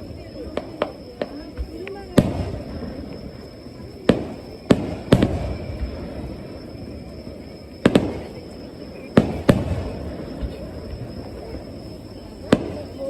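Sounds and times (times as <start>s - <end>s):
firework shells bursting: 4.0s - 6.6s.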